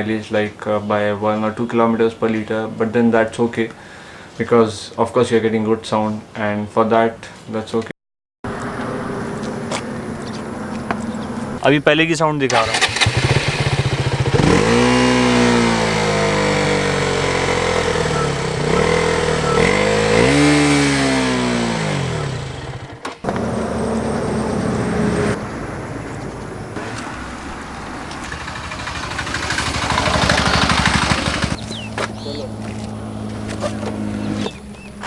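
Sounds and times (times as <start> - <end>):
motorcycle engine idling: 8.5 - 11.6, 12.6 - 24.9, 25.7 - 35.0
motorcycle engine revving: 8.5 - 11.6, 12.5 - 35.0.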